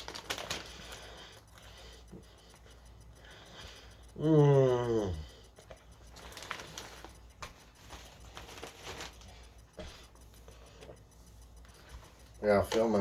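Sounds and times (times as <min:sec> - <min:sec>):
chips being chewed: 0:05.6 - 0:09.4.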